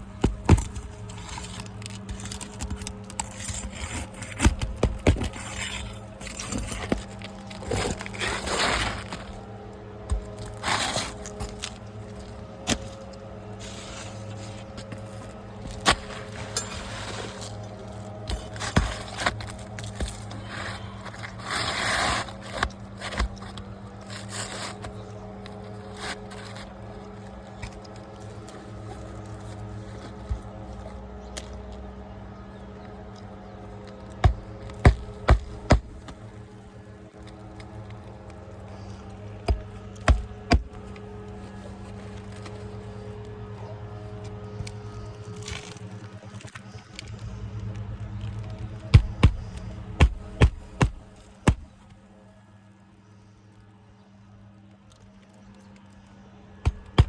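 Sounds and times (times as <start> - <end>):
steady low hum: 0.0 - 54.9, 55.5 - 57.0
scraping: 0.1 - 26.8
sharp knocks on shingles: 34.2 - 36.2, 39.5 - 40.8, 48.9 - 51.7, 56.6 - 57.0.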